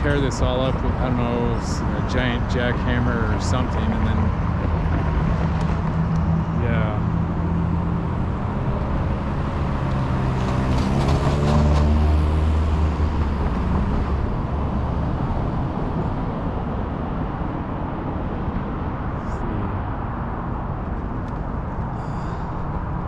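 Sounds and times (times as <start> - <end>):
large vehicle engine: 0.0 - 23.0
road traffic rumble: 0.0 - 23.0.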